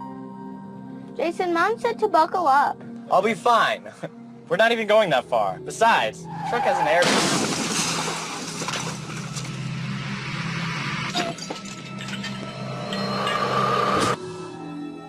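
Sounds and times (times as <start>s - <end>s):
debris crackling and clinking: 7.0s - 10.0s, 11.1s - 14.2s
glass shattering: 7.0s - 10.0s, 11.1s - 14.2s.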